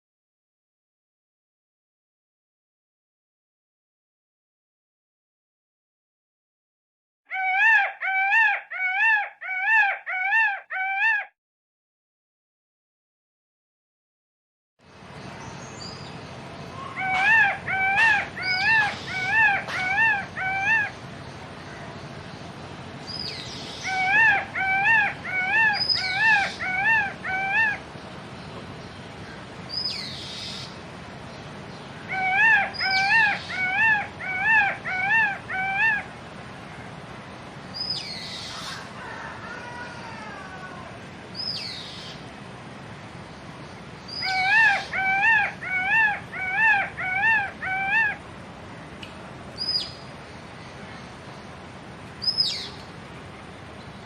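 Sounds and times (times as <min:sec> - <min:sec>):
high downward sliding calls: 0:07.3 - 0:11.3, 0:16.7 - 0:21.0, 0:23.1 - 0:27.9, 0:32.1 - 0:36.1, 0:44.1 - 0:48.2
peacock honking calls: 0:07.3 - 0:11.3, 0:16.7 - 0:21.0, 0:23.4 - 0:27.9, 0:32.0 - 0:36.1, 0:44.1 - 0:48.2.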